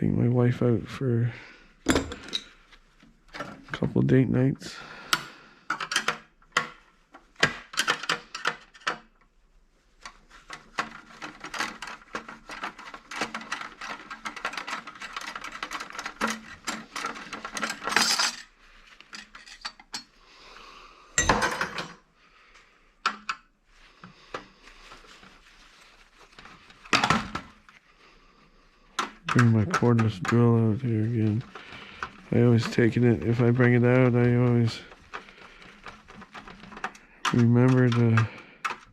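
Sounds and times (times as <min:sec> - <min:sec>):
small metal parts clinking: 0:13.2 - 0:18.5, 0:19.1 - 0:20.1.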